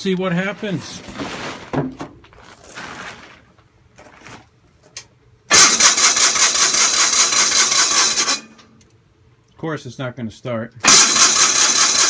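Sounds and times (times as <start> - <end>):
engine cranking with electric starter: 5.5 - 8.6, 10.8 - 12.0.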